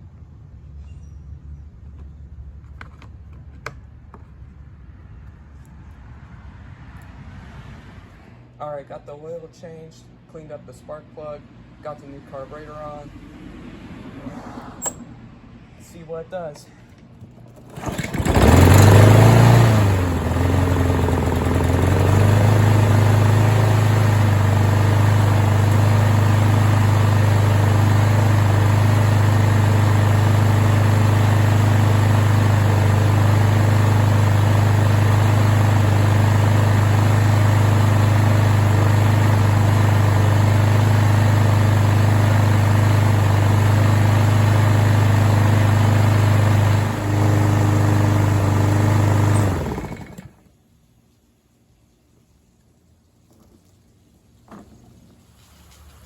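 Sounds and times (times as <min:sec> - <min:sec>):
lawn mower engine starting and running: 0:01.8 - 0:06.1, 0:14.8 - 0:15.4, 0:16.3 - 0:50.6.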